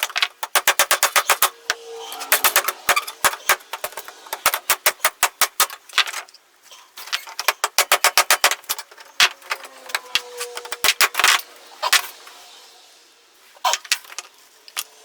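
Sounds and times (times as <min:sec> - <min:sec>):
small metal tools clinking: 0:07.0 - 0:12.1.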